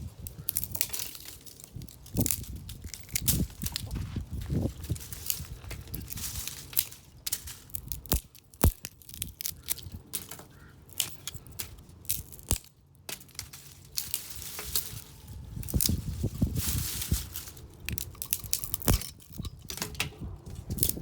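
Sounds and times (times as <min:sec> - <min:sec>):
wooden branches snapping: 0:00.1 - 0:21.0.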